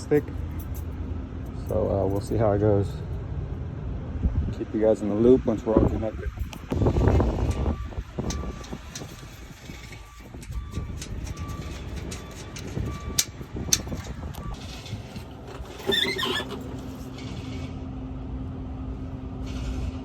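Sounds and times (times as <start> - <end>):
short squeal: 15.8 - 17.8.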